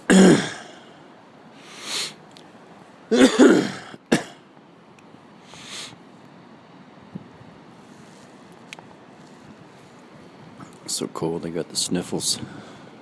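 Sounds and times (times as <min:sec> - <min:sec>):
man coughing: 0:00.0 - 0:00.8, 0:03.1 - 0:04.4
breathy inhales: 0:01.6 - 0:02.2, 0:12.4 - 0:13.0.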